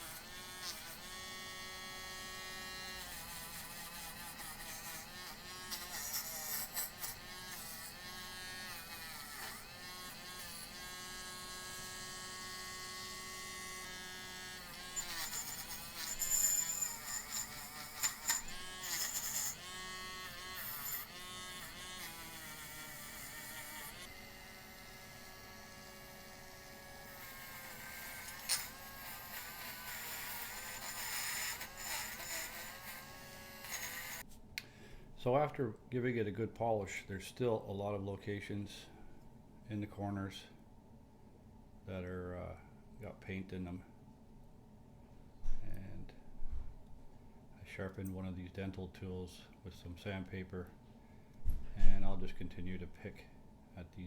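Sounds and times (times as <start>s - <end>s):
rotary tool grinding metal: 0.0s - 34.3s.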